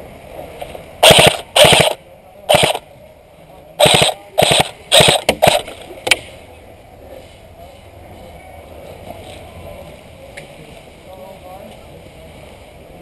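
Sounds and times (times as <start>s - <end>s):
low background noise: 0.0s - 13.0s
airsoft gun firing: 1.0s - 2.8s, 3.8s - 5.7s.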